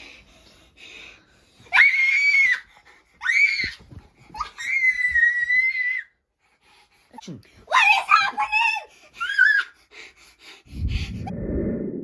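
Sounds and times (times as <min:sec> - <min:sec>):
child screaming: 0:07.7 - 0:09.7.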